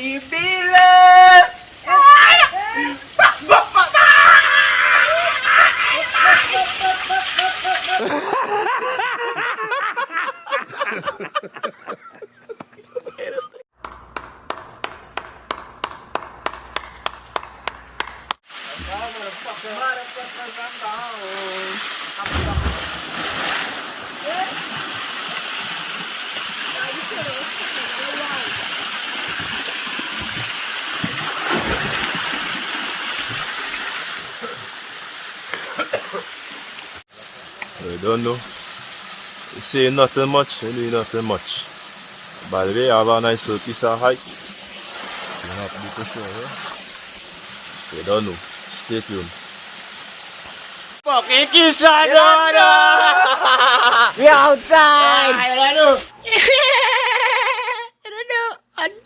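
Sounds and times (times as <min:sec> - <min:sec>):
person laughing: 0:02.8 - 0:13.6, 0:52.6 - 0:54.4, 0:56.2 - 0:58.0
flowing water rushing: 0:18.4 - 0:56.1.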